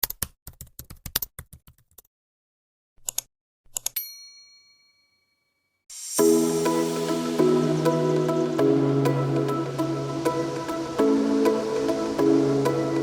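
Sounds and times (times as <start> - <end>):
music: 6.2 - 13.0.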